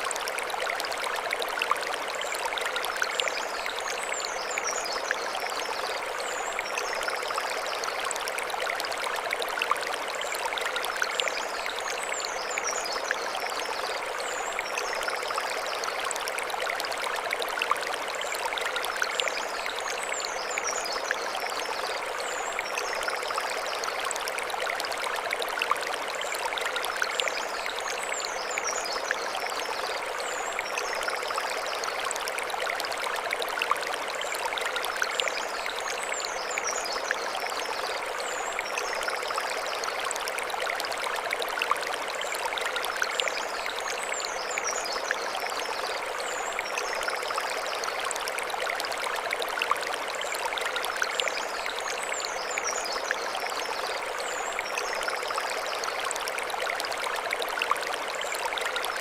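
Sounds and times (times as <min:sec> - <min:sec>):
stream running over stones: 0:00.0 - 0:59.0.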